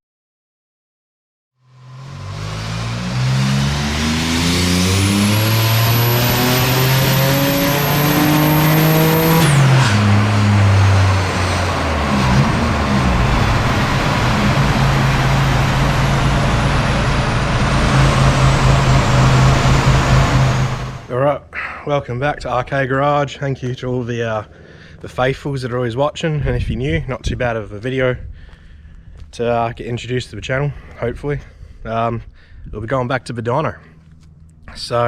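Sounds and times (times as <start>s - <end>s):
car engine revving: 1.6s - 21.1s
high whine: 1.6s - 21.2s.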